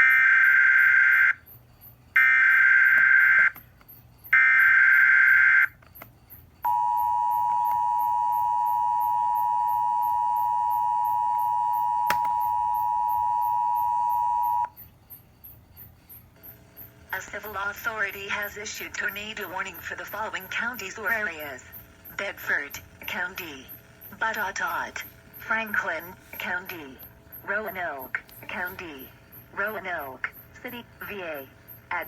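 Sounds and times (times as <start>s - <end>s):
buzzy digital data tones: 6.6s - 32.0s.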